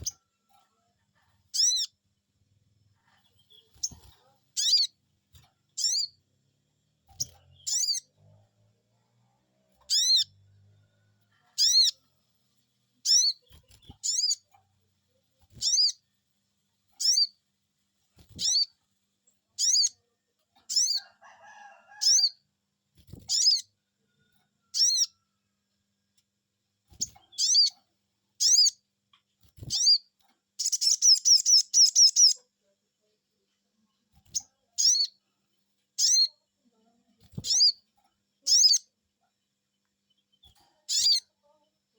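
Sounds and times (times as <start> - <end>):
bird chirping: 0.0 - 0.3, 1.4 - 2.0, 2.8 - 8.6, 9.5 - 14.6, 15.4 - 16.1, 16.8 - 17.4, 18.2 - 21.1, 22.0 - 22.4, 23.1 - 23.8, 24.6 - 25.2, 26.9 - 28.9, 29.5 - 32.5, 34.2 - 36.4, 37.3 - 41.6.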